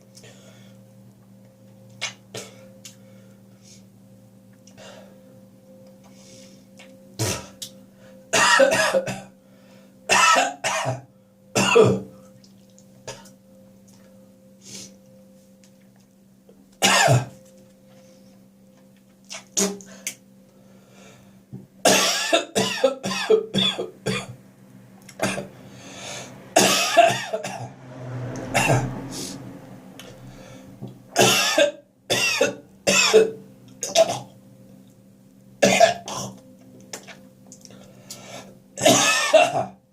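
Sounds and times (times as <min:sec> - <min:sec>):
faint steady hum: 0:00.0 - 0:39.9
person clearing throat: 0:07.2 - 0:07.6, 0:08.4 - 0:09.3, 0:11.6 - 0:12.1, 0:16.8 - 0:17.4, 0:19.3 - 0:19.9, 0:21.9 - 0:24.4, 0:35.6 - 0:36.4, 0:38.8 - 0:39.8
person coughing: 0:07.2 - 0:07.6, 0:08.4 - 0:09.3, 0:10.1 - 0:11.0, 0:11.6 - 0:12.1, 0:16.8 - 0:17.4, 0:21.9 - 0:24.4, 0:25.2 - 0:25.5, 0:31.2 - 0:34.3, 0:35.6 - 0:36.4, 0:38.8 - 0:39.8.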